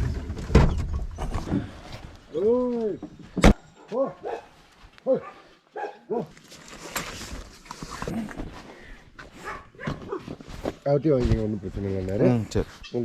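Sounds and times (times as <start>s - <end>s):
dog barking: 3.8s - 6.3s, 9.4s - 10.2s.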